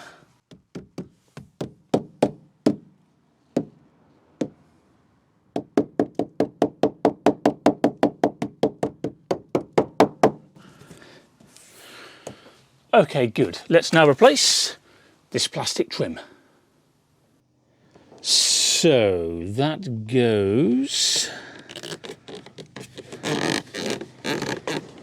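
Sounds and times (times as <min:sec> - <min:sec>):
hammer tapping rubber seal: 0:21.5 - 0:25.0.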